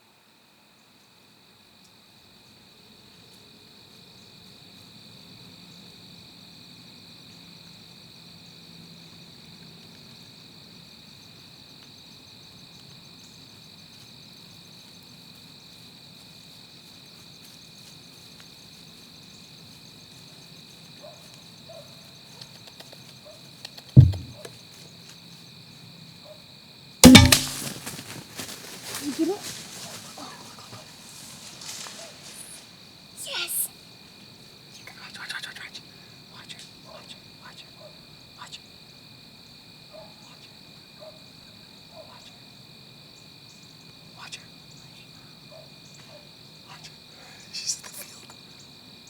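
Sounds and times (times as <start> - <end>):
crickets and insects chirping: 0.2 - 49.0
longbow shot thump: 24.0 - 24.5, 27.0 - 27.8.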